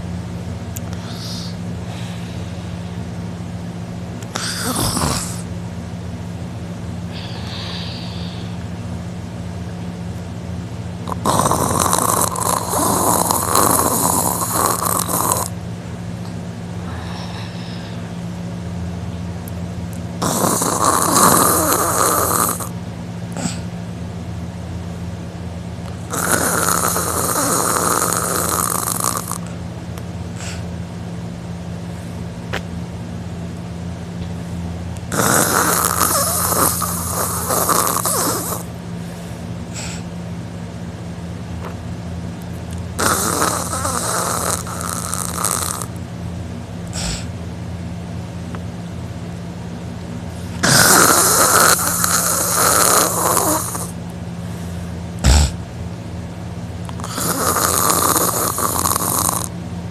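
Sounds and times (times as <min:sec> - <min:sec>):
steady low hum: 0:00.0 - 0:59.9
man snoring loudly: 0:04.3 - 0:05.5, 0:11.0 - 0:15.6, 0:20.2 - 0:22.8, 0:26.1 - 0:29.5, 0:35.1 - 0:38.7, 0:43.0 - 0:46.0, 0:46.9 - 0:47.3, 0:50.6 - 0:54.0, 0:55.2 - 0:55.6, 0:57.0 - 0:59.5.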